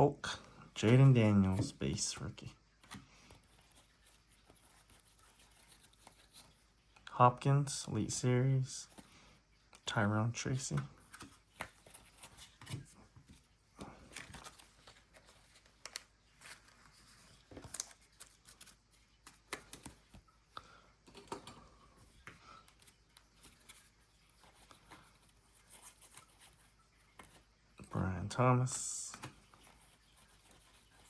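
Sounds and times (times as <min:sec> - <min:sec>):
trading cards rustling and clicking: 0:09.7 - 0:27.6, 0:28.6 - 0:31.0.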